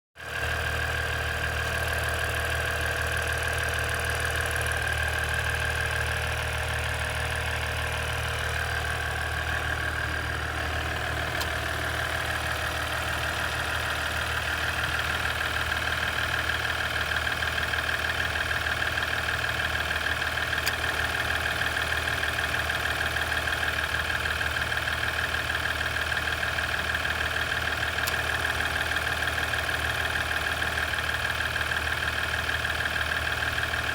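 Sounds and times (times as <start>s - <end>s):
diesel engine idling: 0.2s - 33.9s
fast regular engine clicking: 0.2s - 33.9s.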